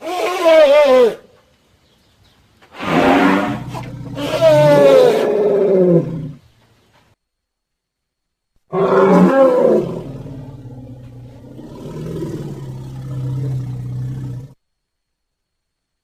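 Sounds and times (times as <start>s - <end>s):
elephant roaring: 2.7s - 6.4s, 8.7s - 14.6s.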